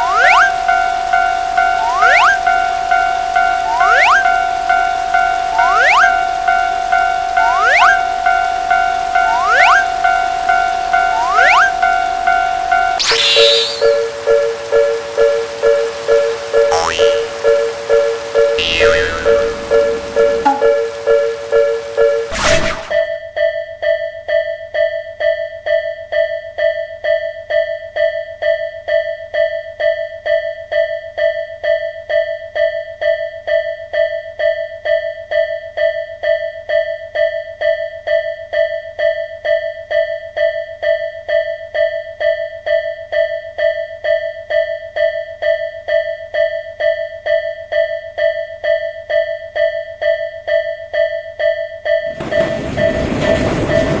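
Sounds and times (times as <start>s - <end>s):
level crossing warning bell: 0.0s - 13.0s, 19.3s - 22.3s, 49.6s - 54.0s
train passing rushing noise: 52.1s - 54.0s.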